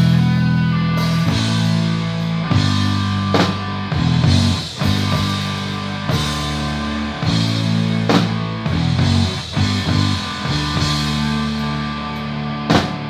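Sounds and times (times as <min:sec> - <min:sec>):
hard rock band playing: 0:00.0 - 0:13.0.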